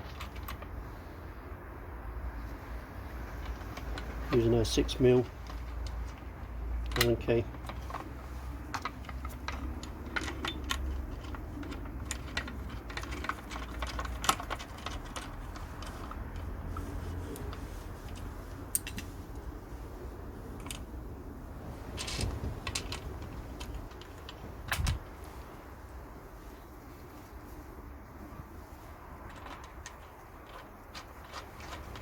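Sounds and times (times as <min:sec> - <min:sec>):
metal parts clicking and clinking: 0:00.0 - 0:01.0, 0:03.1 - 0:19.5, 0:20.5 - 0:21.0, 0:21.7 - 0:25.1, 0:29.2 - 0:32.0.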